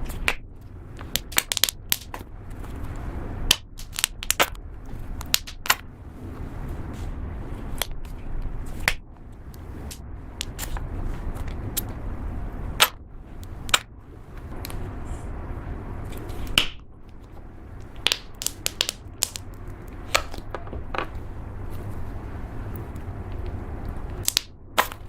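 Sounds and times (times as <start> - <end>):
slime clicking and popping: 17.9 - 19.5.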